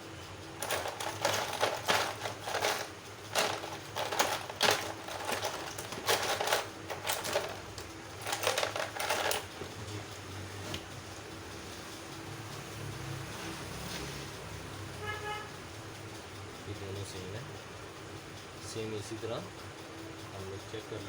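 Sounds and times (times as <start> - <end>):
small hard parts clicking: 0.2 - 11.0.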